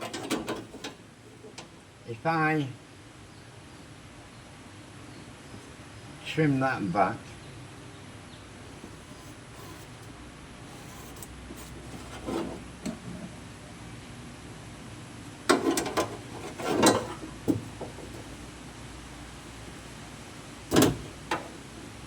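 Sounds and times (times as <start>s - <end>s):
metal panel scraping: 0.0s - 1.7s, 8.8s - 10.1s, 10.7s - 12.9s, 15.5s - 18.4s.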